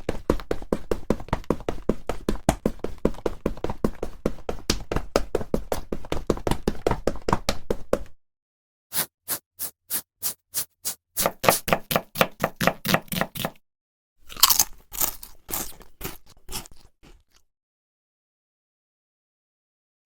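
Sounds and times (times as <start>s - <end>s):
crunching: 14.3s - 17.4s.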